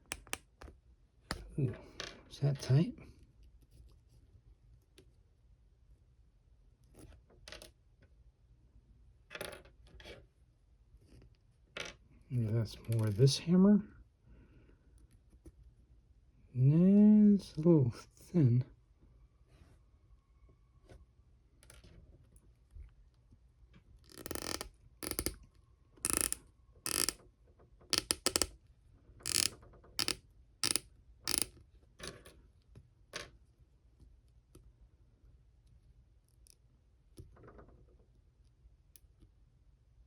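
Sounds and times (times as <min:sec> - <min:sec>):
plastic action figure clicking: 0:24.2 - 0:25.4, 0:26.0 - 0:27.2, 0:27.9 - 0:28.5, 0:29.3 - 0:31.5.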